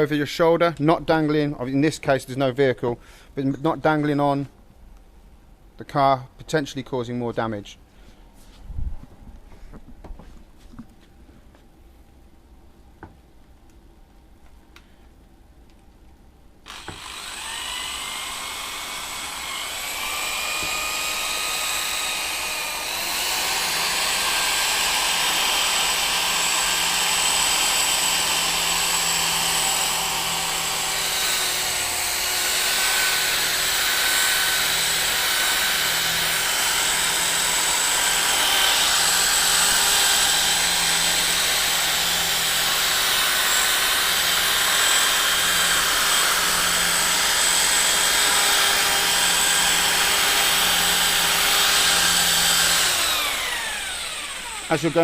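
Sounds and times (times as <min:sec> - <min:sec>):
electric drill motor whine: 0:16.7 - 0:55.0.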